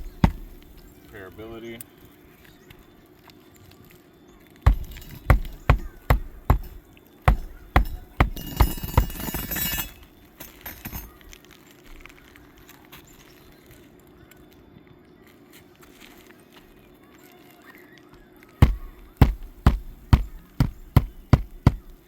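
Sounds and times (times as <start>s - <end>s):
hammer driving nails: 0.0s - 0.8s, 4.7s - 11.1s, 18.6s - 22.0s.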